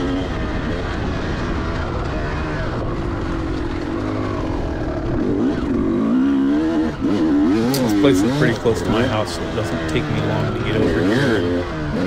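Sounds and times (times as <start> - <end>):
two-stroke motorcycle engine: 0.0 - 12.0.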